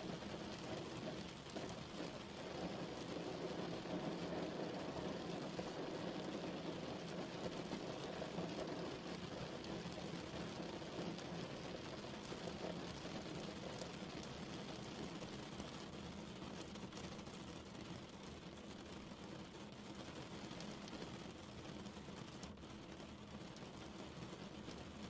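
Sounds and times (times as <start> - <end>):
steady rain falling: 0.0 - 25.0.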